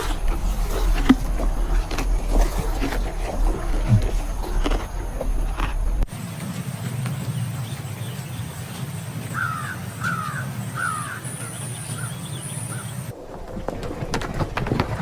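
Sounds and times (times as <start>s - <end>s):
bird calling: 0.0s - 6.1s, 9.3s - 13.1s.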